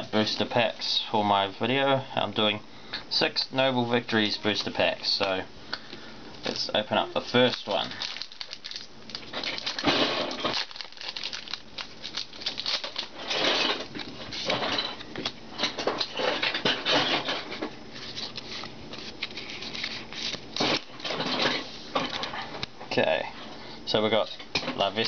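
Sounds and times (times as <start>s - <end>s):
foil wrapper tearing and crinkling: 7.2s - 14.1s.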